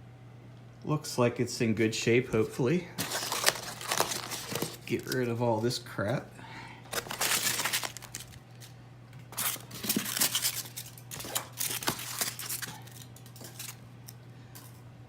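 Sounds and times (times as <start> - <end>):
styrofoam packing rustling and scraping: 3.0 - 5.3, 6.9 - 13.8.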